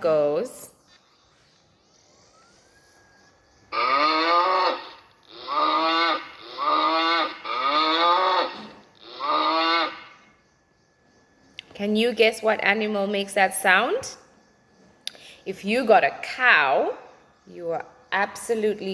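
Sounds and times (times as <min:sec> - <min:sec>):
cow mooing: 0:03.7 - 0:10.2.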